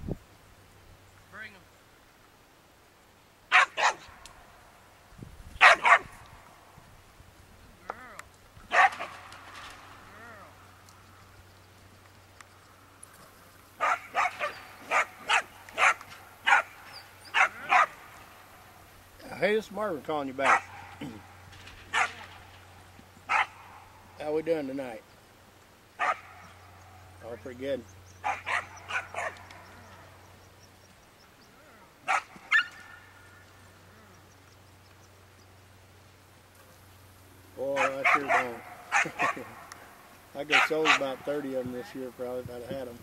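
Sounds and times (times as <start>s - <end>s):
dog barking: 3.5s - 4.1s, 5.6s - 6.2s, 8.7s - 9.2s, 13.8s - 18.0s, 20.4s - 21.1s, 21.9s - 22.3s, 23.3s - 23.9s, 26.0s - 26.6s, 28.2s - 29.8s, 32.0s - 33.0s, 37.8s - 39.8s, 40.5s - 41.2s.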